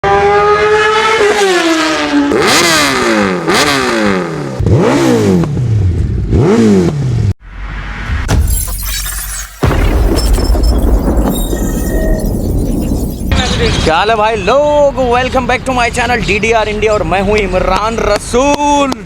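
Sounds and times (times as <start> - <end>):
motorcycle engine revving: 0.0 - 7.4.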